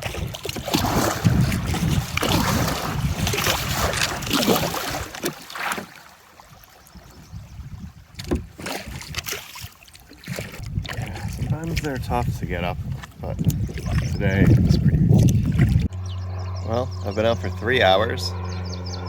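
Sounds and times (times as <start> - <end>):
kayak hull bumping: 0.0 - 6.1, 8.1 - 15.8
water splashing: 0.0 - 16.0.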